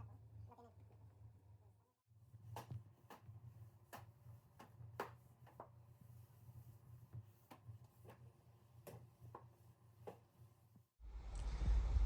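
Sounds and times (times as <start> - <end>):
low steady hum: 11.0 - 12.0.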